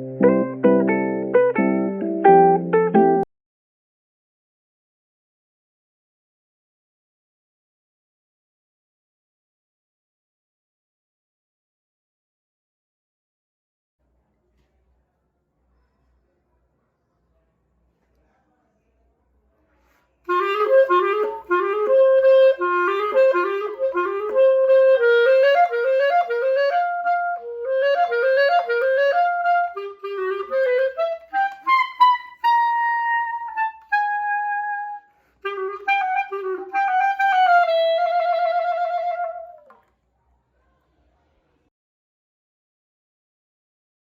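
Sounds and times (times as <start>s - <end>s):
clarinet solo melody: 0.0s - 3.3s, 20.3s - 39.7s.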